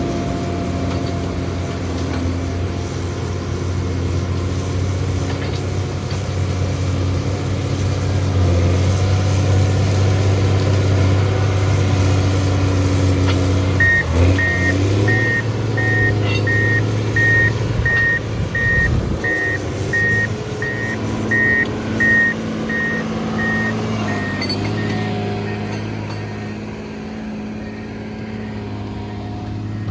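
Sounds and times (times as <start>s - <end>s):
diesel engine running: 0.0s - 29.9s
reversing alarm beeping: 13.7s - 29.9s.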